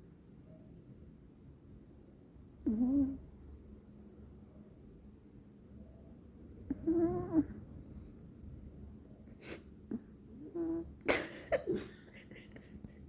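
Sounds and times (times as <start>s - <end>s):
dog snoring: 2.6s - 3.2s, 6.7s - 7.6s.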